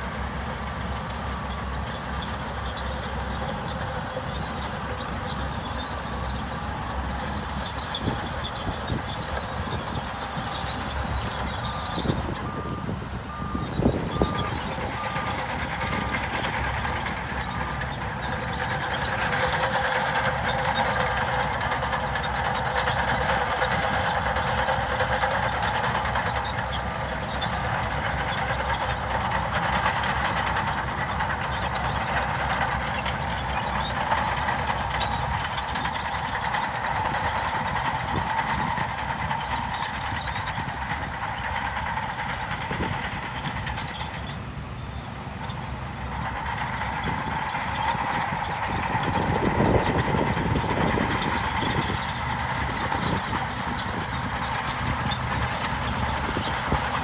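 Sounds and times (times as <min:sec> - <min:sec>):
heavy machinery diesel engine: 0:00.0 - 0:57.0
reversing alarm beeping: 0:11.0 - 0:16.8.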